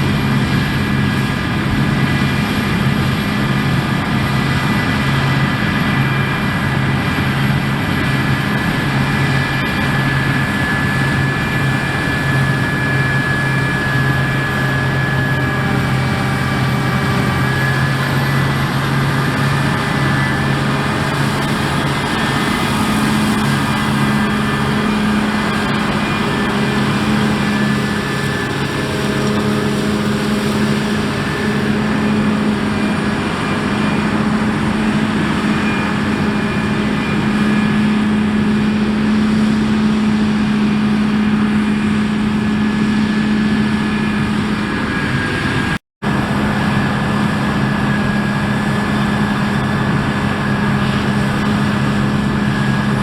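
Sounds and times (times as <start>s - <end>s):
heavy diesel machinery running: 0.0s - 53.0s.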